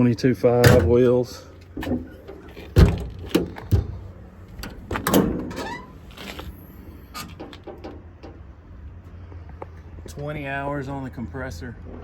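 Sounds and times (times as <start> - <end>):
metal door knocks and clanks: 0.6 - 1.0, 2.8 - 4.0, 4.6 - 6.0
metal door scraping: 4.6 - 8.1
door hinge squeak: 5.4 - 6.0.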